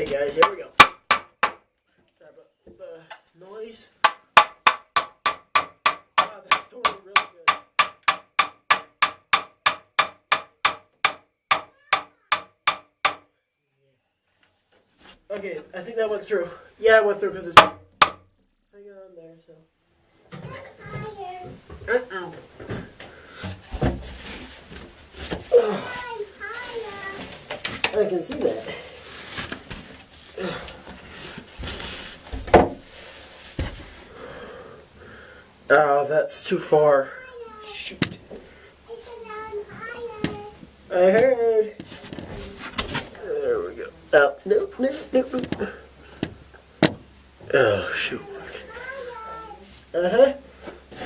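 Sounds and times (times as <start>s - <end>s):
knocks and bumps: 20.3s - 28.7s, 29.4s - 32.9s, 33.5s - 34.1s, 45.3s - 47.6s.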